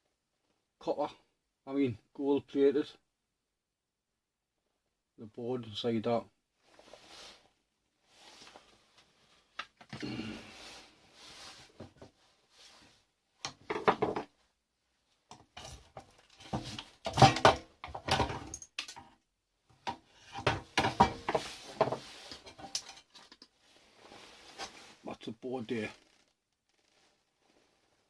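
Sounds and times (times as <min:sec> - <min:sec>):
plastic box clattering and clicking: 0:15.9 - 0:19.1.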